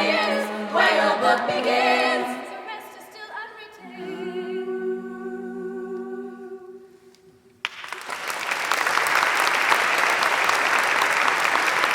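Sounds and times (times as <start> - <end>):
women's choir singing chord: 0.0 - 7.0
audience applause: 7.6 - 11.9.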